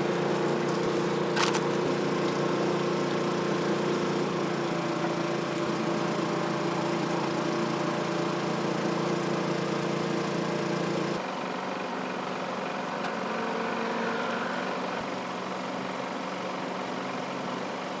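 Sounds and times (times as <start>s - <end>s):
small engine humming: 0.0s - 11.2s.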